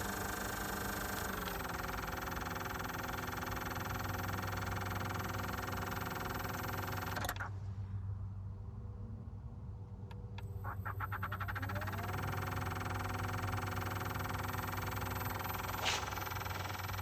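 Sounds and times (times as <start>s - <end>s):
pool pump humming and ticking: 0.0s - 7.6s, 10.0s - 17.0s.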